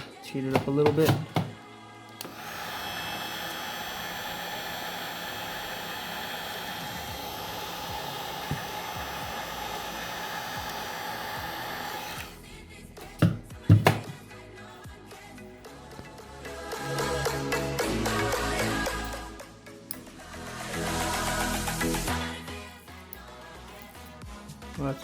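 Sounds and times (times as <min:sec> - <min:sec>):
heat gun blowing: 0:02.1 - 0:14.2.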